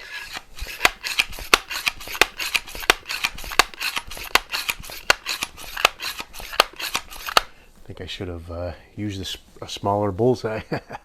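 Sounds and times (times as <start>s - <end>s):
air rifle pump clicking: 0.0s - 7.9s
rasping rubbing of pump stroke: 0.0s - 10.3s.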